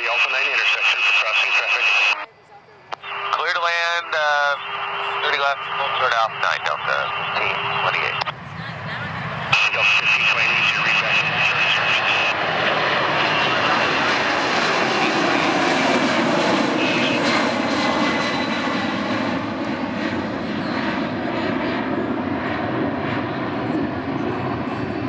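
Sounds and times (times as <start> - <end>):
high steady whine: 0.0 - 19.8
jet engines rumbling: 0.0 - 25.0.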